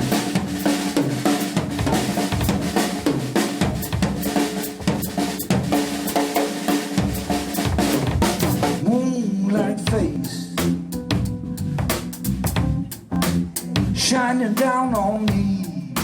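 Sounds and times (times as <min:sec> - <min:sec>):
snare and bass drum hits: 0:00.0 - 0:08.8, 0:10.6 - 0:14.1
live band playing instrumental: 0:00.0 - 0:08.9, 0:09.6 - 0:14.2.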